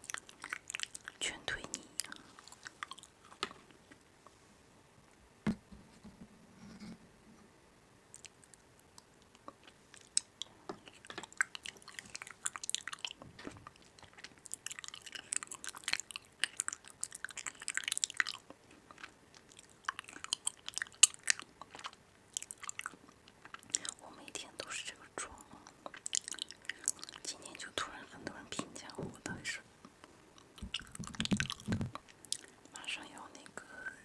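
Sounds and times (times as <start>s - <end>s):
chewing crunchy food: 0.0s - 3.7s, 8.1s - 24.7s, 25.3s - 27.6s, 29.8s - 32.8s.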